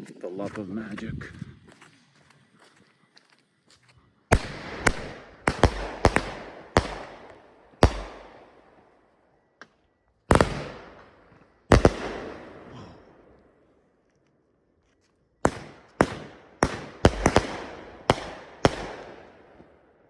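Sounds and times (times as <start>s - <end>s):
firework bangs echoing: 4.3s - 8.8s, 10.3s - 13.2s, 15.5s - 19.7s.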